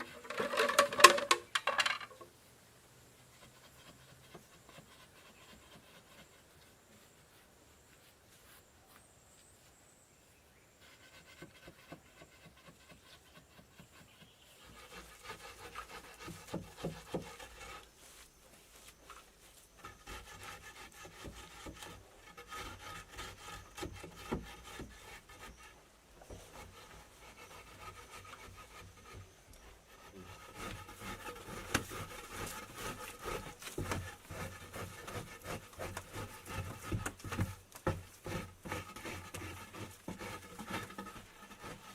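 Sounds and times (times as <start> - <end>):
scraping and rubbing on wood: 0.0 - 2.3, 3.3 - 8.6, 10.7 - 41.9.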